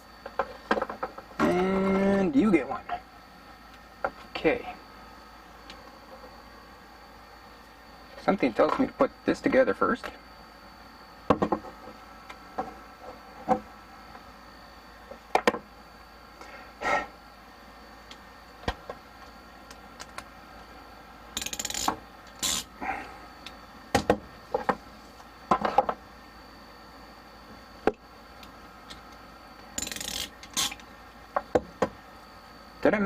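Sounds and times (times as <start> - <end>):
clicks and knocks of small parts: 29.8 - 30.9.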